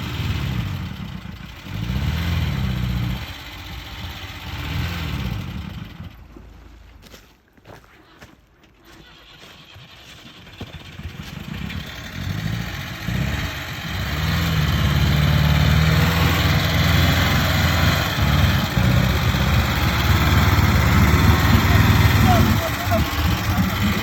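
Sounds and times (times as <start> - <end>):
off-road vehicle engine running unevenly: 0.0 - 7.2, 8.8 - 24.0
person speaking: 20.8 - 24.0.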